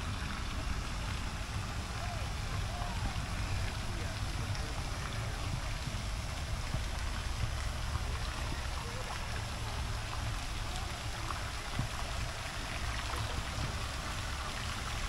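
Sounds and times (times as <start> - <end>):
continuous low rumble: 0.0 - 15.0
river water trickling and splashing: 0.0 - 15.0.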